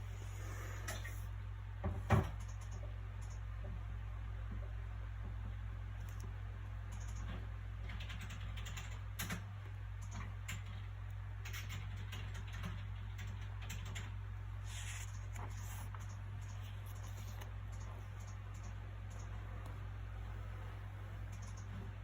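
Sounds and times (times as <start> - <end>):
low background hum: 0.0 - 22.0
book pages rustling: 14.6 - 17.5.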